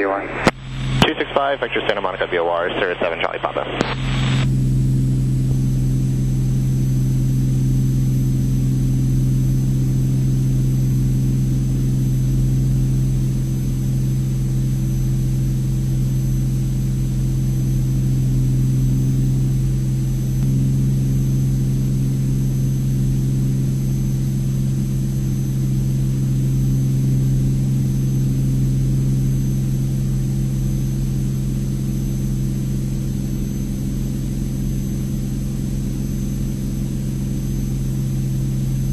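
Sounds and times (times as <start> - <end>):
aircraft engine and propeller drone: 0.0 - 7.3.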